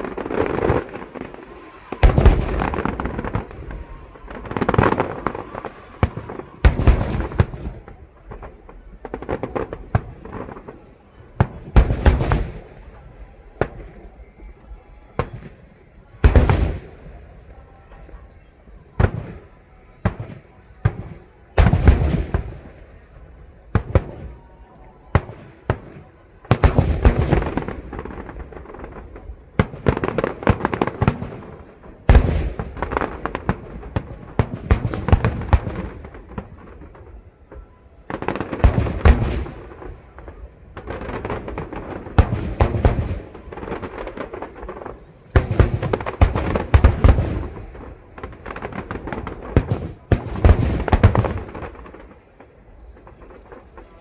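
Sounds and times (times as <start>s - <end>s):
firework crackling: 0.0s - 54.0s
firework shells bursting: 38.1s - 54.0s.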